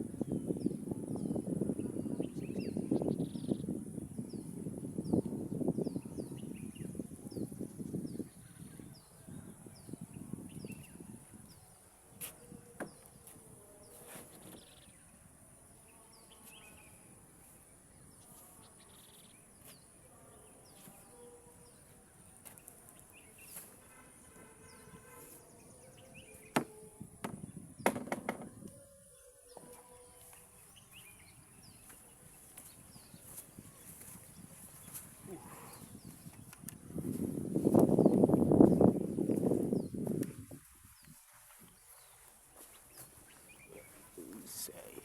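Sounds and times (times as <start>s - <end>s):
sharp knocks: 26.5s - 28.6s.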